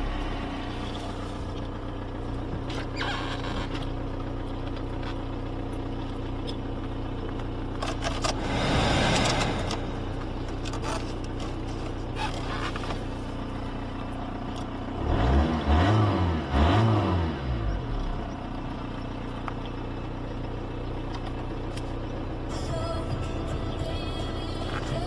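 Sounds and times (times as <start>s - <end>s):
diesel engine idling: 0.0s - 15.9s, 17.5s - 25.0s
engine revving: 7.8s - 11.5s, 14.9s - 18.1s.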